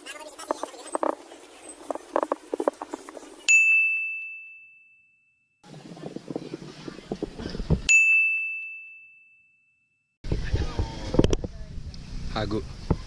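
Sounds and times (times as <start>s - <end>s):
muffled outdoor sound: 0.0s - 3.7s, 5.6s - 8.1s, 10.2s - 13.0s
bright bell ding: 3.5s - 5.5s, 7.9s - 10.0s.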